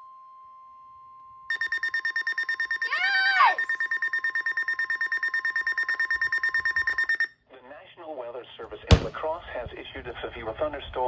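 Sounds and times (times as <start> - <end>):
faint steady warning alarm tone: 0.0 - 7.4
rapid beeping alarm: 1.5 - 7.3
short rising-and-falling cry: 2.9 - 3.7.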